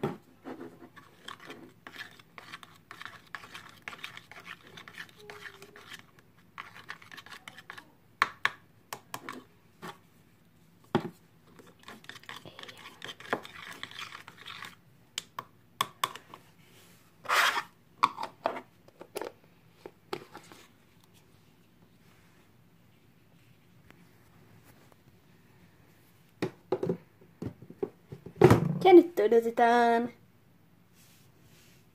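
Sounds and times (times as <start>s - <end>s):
hands working slime: 0.4s - 10.0s
utensil scraping in container: 0.5s - 7.8s, 11.6s - 14.8s, 17.2s - 17.7s.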